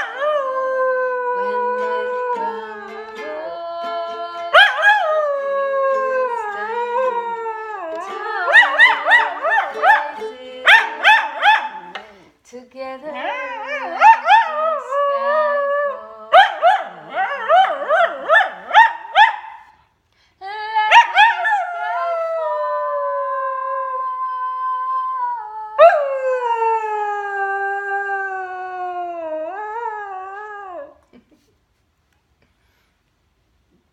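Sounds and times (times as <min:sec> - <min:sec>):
dog howling: 0:00.0 - 0:03.9, 0:04.5 - 0:12.2, 0:13.2 - 0:19.6, 0:20.8 - 0:31.0
dog yowling: 0:04.5 - 0:12.2, 0:13.2 - 0:15.3, 0:15.9 - 0:19.6.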